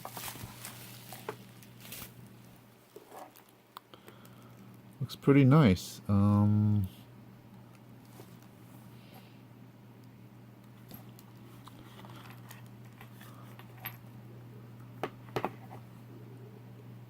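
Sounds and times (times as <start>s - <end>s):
faint steady low hum: 0.0s - 17.0s.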